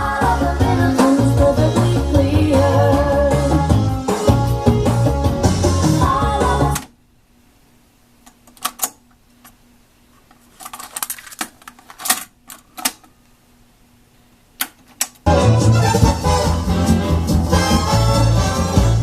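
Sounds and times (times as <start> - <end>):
music from tape: 0.0 - 6.9, 15.3 - 19.0.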